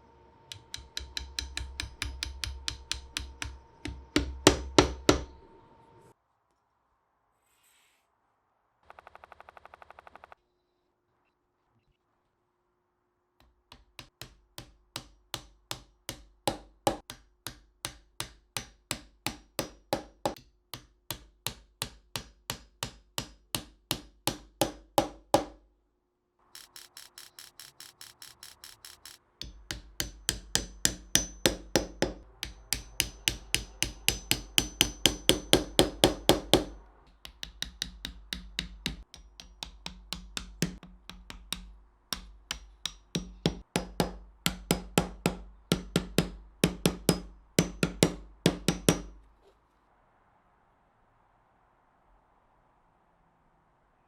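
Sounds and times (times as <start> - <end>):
hammer blows on wood: 0.5 - 5.5, 13.7 - 25.6, 29.0 - 49.2.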